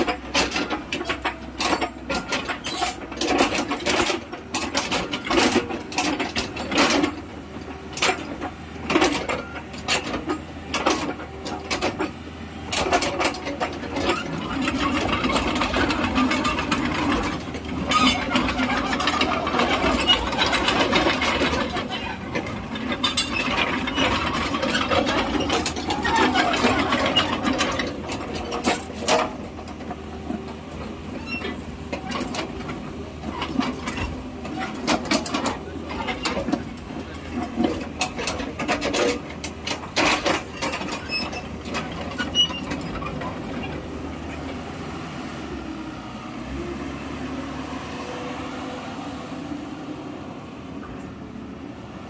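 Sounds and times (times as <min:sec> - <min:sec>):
machinery squeaking: 0:00.0 - 0:07.2, 0:12.8 - 0:30.0, 0:30.8 - 0:44.6
diesel engine running: 0:00.0 - 0:52.0.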